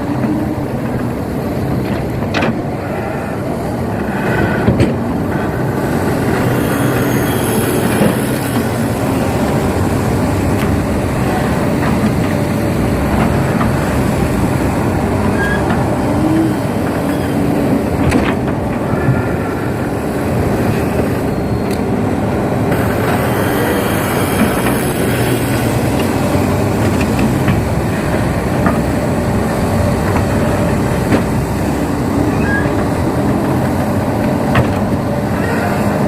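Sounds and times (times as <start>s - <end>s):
excavator engine rumbling: 0.0s - 36.0s.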